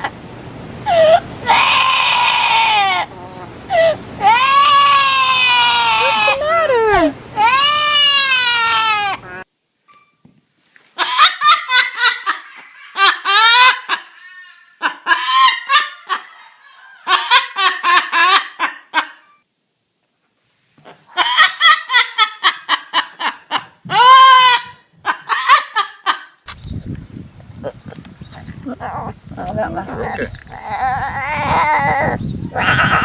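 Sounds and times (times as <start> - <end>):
high-pitched laughter: 11.0 - 19.2, 21.1 - 26.4, 29.4 - 33.0.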